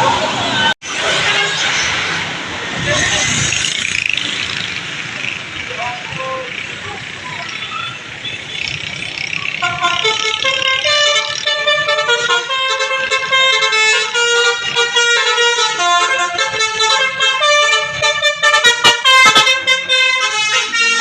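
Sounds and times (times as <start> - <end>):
bus horn playing multi-tone tune: 0.9 - 2.0, 5.7 - 8.6, 9.5 - 21.0.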